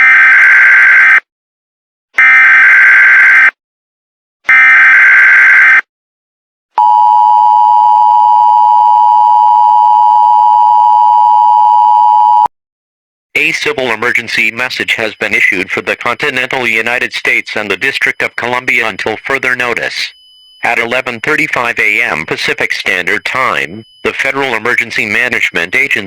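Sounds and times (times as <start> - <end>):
data burst tones: 13.4 - 26.0
two-tone alert signal: 17.6 - 25.6.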